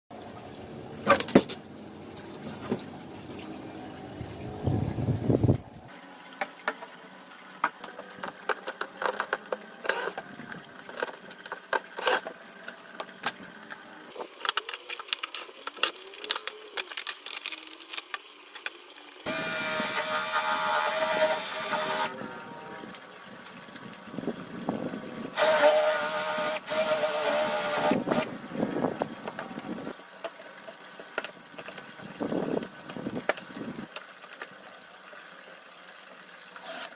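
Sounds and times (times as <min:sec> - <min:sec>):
cordless drill whining: 0:19.3 - 0:22.1, 0:25.4 - 0:28.3.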